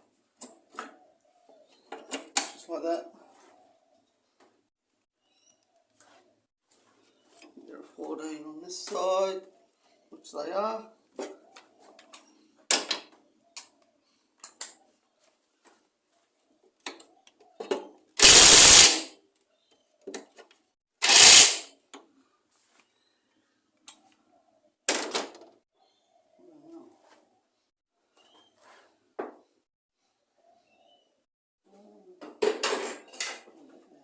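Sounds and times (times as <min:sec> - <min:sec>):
power driver undoing bolts: 0:18.2 - 0:19.1, 0:21.0 - 0:21.6.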